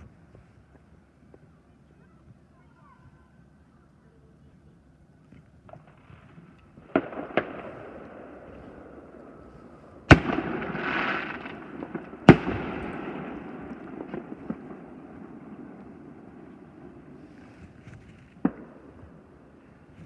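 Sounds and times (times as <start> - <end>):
fireworks crackling: 0.0 - 20.0
fireworks booming: 5.4 - 20.0.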